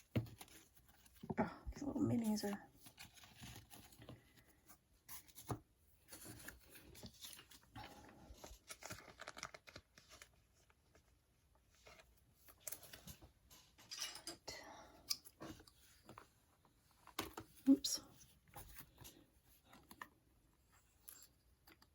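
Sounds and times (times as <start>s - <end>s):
trading cards rustling and clicking: 8.4s - 10.4s.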